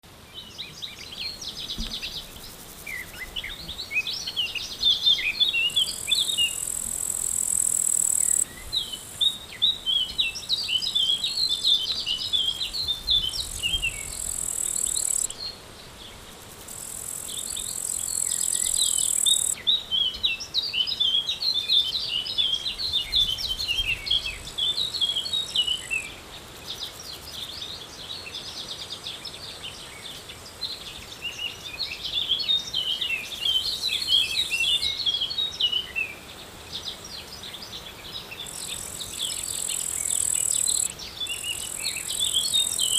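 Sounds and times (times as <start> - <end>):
songbird chirping: 0.0 - 16.4, 17.0 - 42.9
high insect buzz: 1.0 - 19.6, 36.5 - 42.9.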